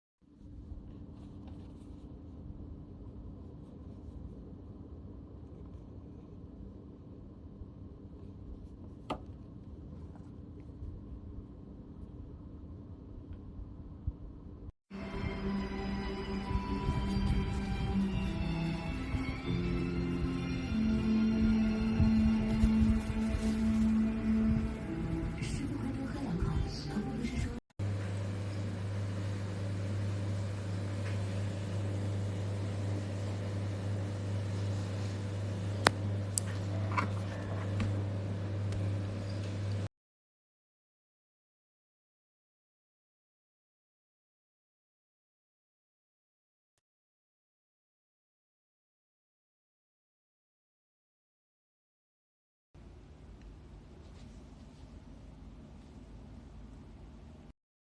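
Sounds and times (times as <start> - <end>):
low background hum: 0.2 - 39.9, 52.8 - 57.5.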